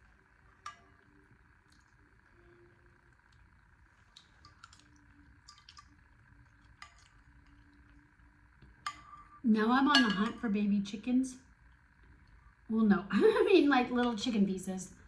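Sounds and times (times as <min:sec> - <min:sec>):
utensil clinking against bowl: 0:09.9 - 0:10.4.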